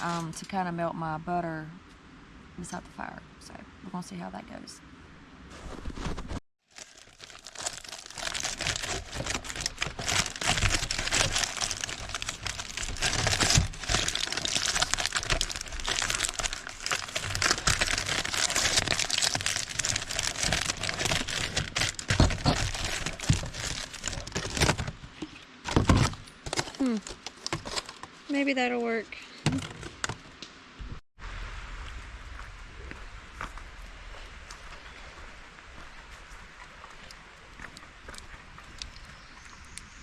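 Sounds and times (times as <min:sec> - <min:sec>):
aluminum foil crinkling: 0:06.7 - 0:25.0, 0:25.7 - 0:28.1.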